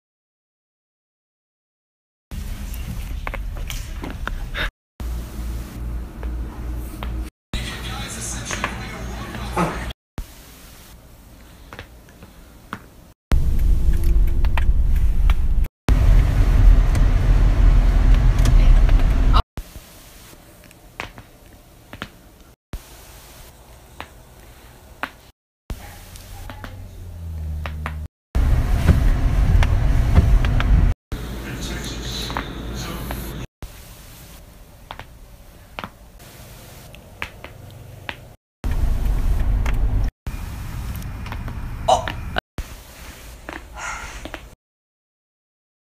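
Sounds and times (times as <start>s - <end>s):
loud low rumble: 13.3s - 19.4s, 28.4s - 31.4s.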